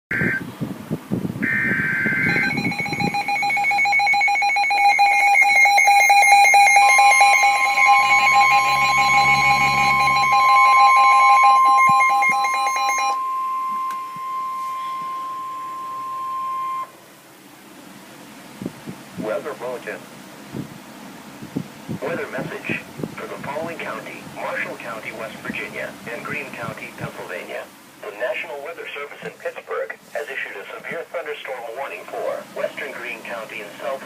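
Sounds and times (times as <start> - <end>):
data burst tones: 0.1 - 0.4, 1.4 - 16.9
electronic attention tone: 1.4 - 16.9
steady warning tone: 1.4 - 17.0.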